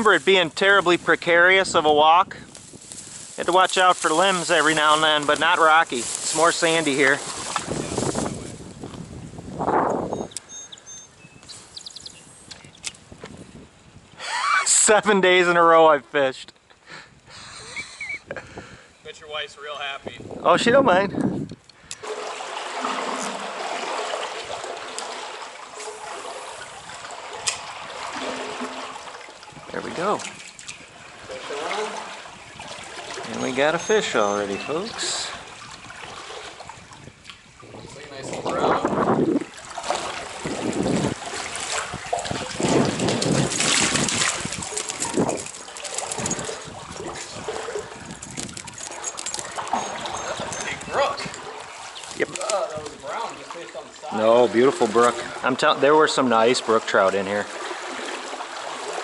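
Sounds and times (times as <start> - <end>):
fish thrashing and splashing: 3.0 - 8.2, 22.0 - 37.2, 39.4 - 53.9, 57.4 - 59.0
stream water flowing: 3.0 - 8.2, 21.9 - 59.0.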